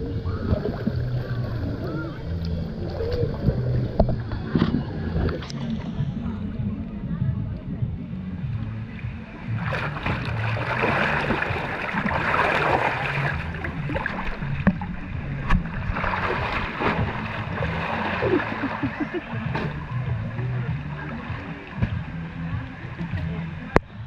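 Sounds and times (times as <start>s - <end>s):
water rushing and splashing: 0.0s - 5.6s, 9.4s - 23.8s
wind rumbling on microphone: 0.0s - 24.0s.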